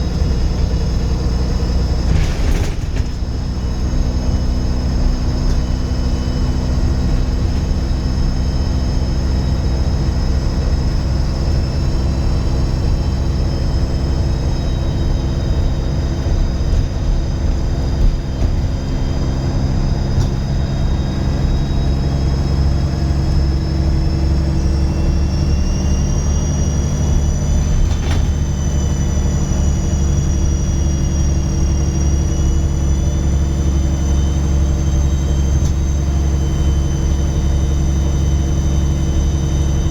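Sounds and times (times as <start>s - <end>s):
bus diesel engine droning: 0.0s - 39.9s
turbocharger whistle: 20.0s - 39.9s.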